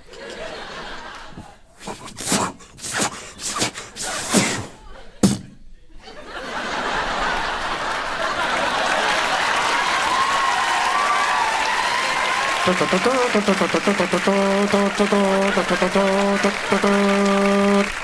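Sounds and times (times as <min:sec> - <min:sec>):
audience laughter and applause: 0:00.0 - 0:18.0
short sharp sounds: 0:01.8 - 0:05.6.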